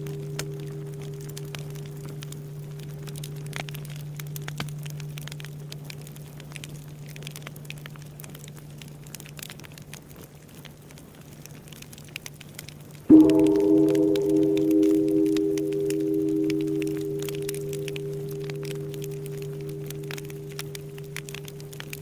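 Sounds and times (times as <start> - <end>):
large temple bell ringing: 0.0 - 6.5, 13.1 - 22.0
bonfire crackling and popping: 0.0 - 22.0.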